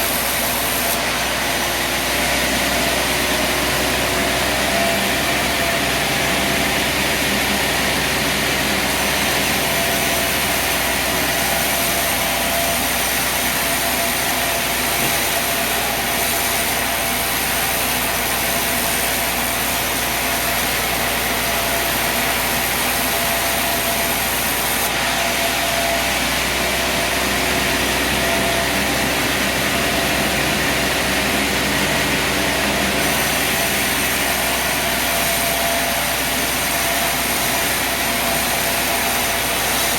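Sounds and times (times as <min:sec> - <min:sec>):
sawmill sawing through log: 0:00.0 - 0:39.9.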